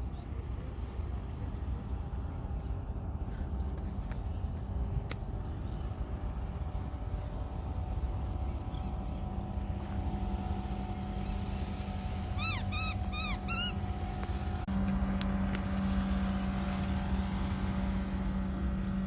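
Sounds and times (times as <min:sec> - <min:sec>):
vehicle engine hum: 0:00.0 - 0:19.0
bird calling: 0:10.8 - 0:13.9.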